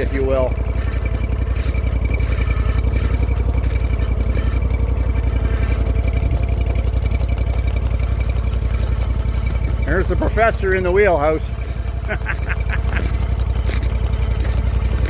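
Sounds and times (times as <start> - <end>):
engine idling: 0.0 - 15.0.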